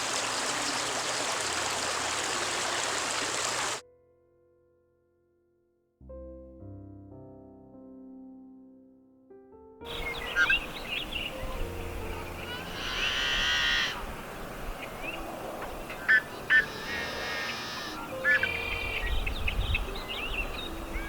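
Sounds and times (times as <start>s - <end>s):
harsh buzzy bird calls: 9.9s - 19.2s
birds chirping and whistling: 9.9s - 21.0s.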